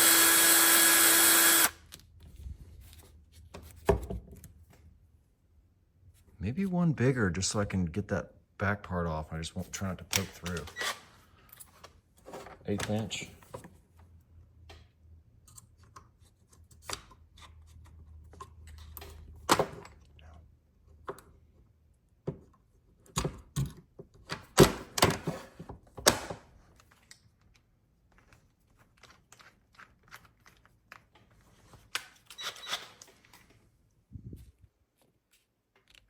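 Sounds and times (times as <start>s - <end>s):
tools handled on a workbench: 10.1s - 13.8s.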